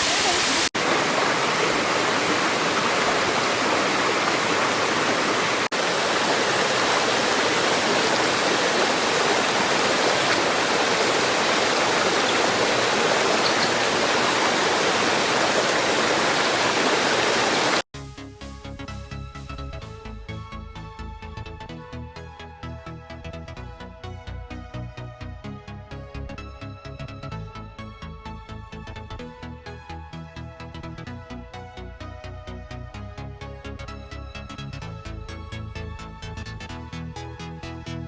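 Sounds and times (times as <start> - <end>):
waterfall and stream rushing: 0.0 - 17.9.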